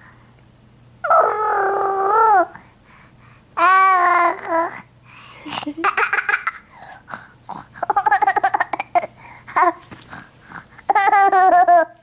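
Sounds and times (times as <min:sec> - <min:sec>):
baby babbling: 0:01.1 - 0:02.6, 0:03.6 - 0:04.9
baby laughing: 0:05.5 - 0:06.7, 0:07.8 - 0:09.8, 0:10.8 - 0:12.0.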